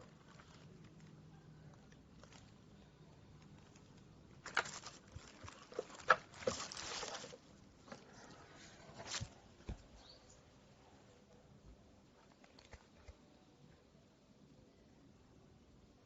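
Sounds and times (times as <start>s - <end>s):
handling rustling: 0.0s - 10.2s.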